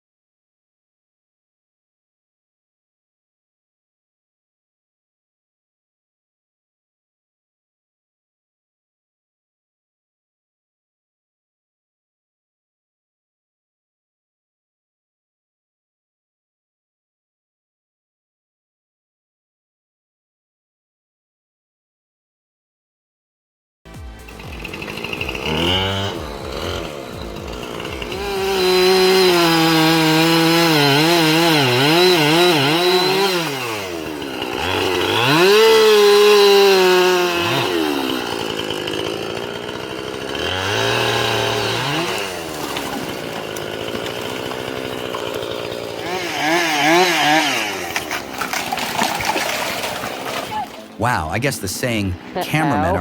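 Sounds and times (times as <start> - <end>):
chainsaw cutting: 23.9 - 53.0.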